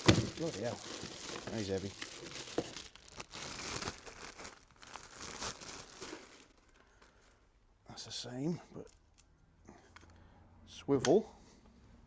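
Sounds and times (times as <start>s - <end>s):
packaging crinkling and rustling: 0.0s - 7.1s.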